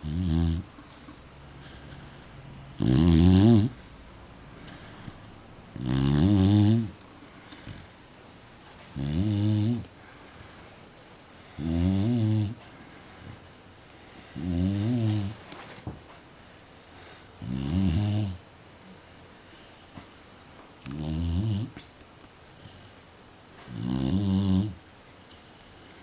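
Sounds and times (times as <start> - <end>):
dog snoring: 0.0 - 3.9, 4.5 - 18.4, 20.7 - 21.8, 23.6 - 26.0
soft breaths: 0.6 - 11.7, 12.5 - 17.4, 18.8 - 20.9, 22.4 - 23.7, 25.1 - 26.0.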